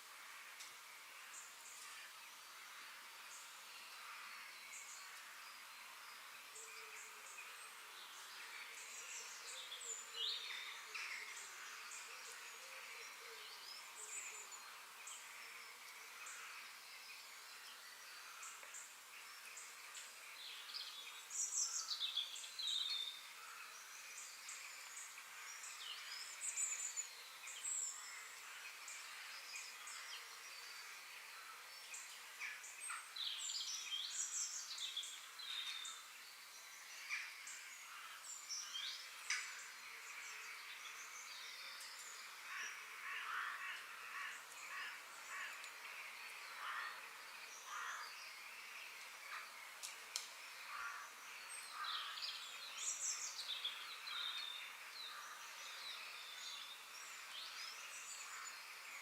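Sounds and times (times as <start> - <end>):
steady background hiss: 0.0 - 59.0.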